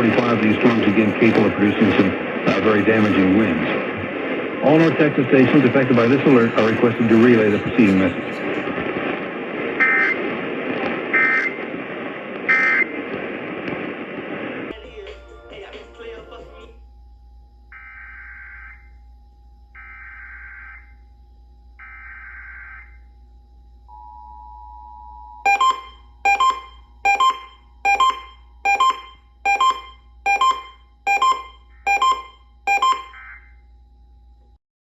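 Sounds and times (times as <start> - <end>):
faint steady hum: 0.0 - 34.6
sharp electronic beeps: 9.8 - 10.2, 11.2 - 11.6, 25.5 - 33.5.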